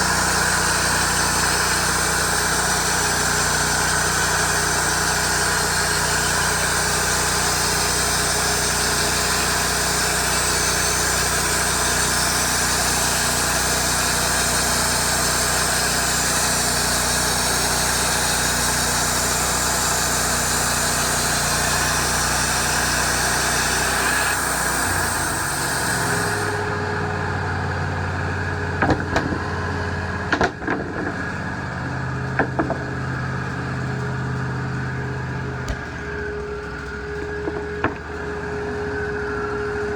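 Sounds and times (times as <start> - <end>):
band saw cutting log: 0.0 - 39.9
sawmill engine drone: 0.0 - 39.9
sharp knocks: 28.8 - 29.6, 30.3 - 31.3, 32.3 - 33.2, 35.6 - 36.1.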